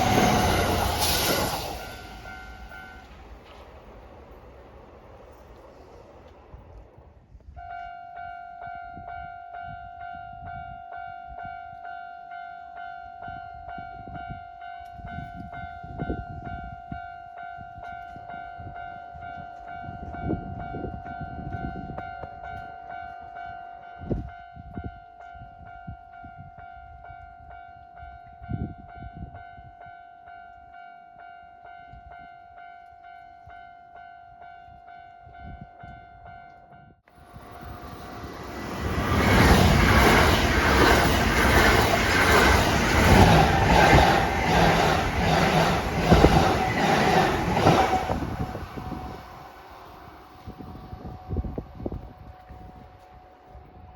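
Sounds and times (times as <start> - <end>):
level-crossing alarm dinging: 0.0 - 3.6
train rumbling past: 0.0 - 7.6, 36.3 - 53.9.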